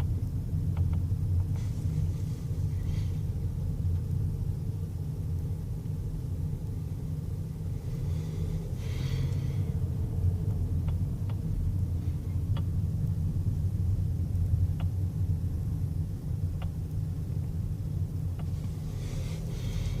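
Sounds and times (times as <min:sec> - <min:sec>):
car engine rumbling: 0:00.0 - 0:20.0
steering wheel clicks: 0:00.7 - 0:01.6.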